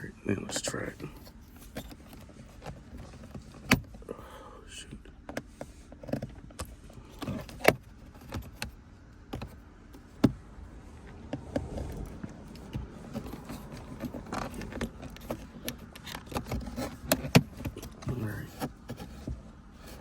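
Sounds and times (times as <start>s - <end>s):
plastic trim clicking and rattling: 11.3s - 19.0s.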